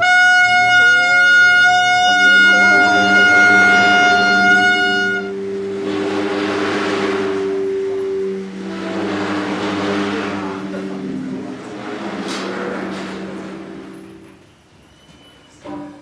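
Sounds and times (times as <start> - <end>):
higher horn tone: 0.0 - 14.6
droning horn-like tones: 0.0 - 14.7.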